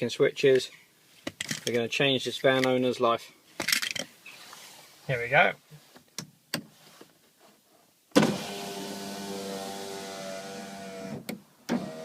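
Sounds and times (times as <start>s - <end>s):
electric window motor humming: 8.2s - 12.0s.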